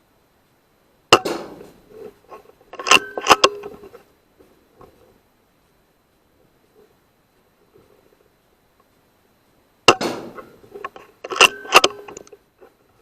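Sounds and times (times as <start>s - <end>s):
air rifle shot: 1.1s - 1.8s, 9.9s - 10.4s
sharp clicks: 9.9s - 12.4s.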